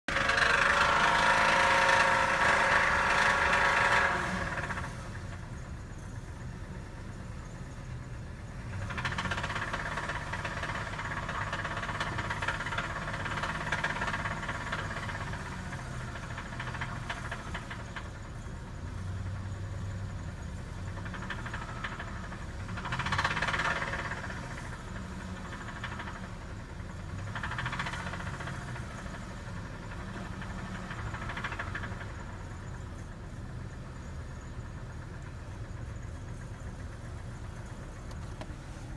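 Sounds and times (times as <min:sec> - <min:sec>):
car engine running: 0:00.0 - 0:38.9
heavy engine rod knocking: 0:08.7 - 0:18.3, 0:20.8 - 0:26.4, 0:27.1 - 0:32.7.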